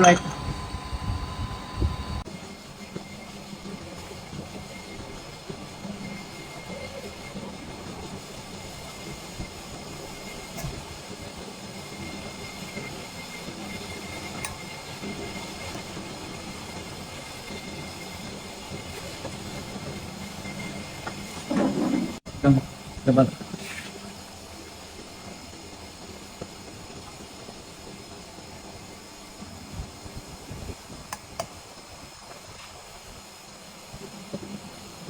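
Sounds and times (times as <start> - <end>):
lathe running: 0.0 - 2.2
faint high whine: 0.0 - 3.3.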